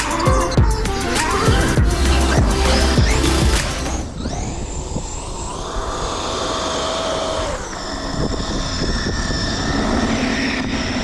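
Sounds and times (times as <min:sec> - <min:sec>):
low rumble: 0:00.2 - 0:04.2
toy truck motor whining: 0:00.8 - 0:10.0.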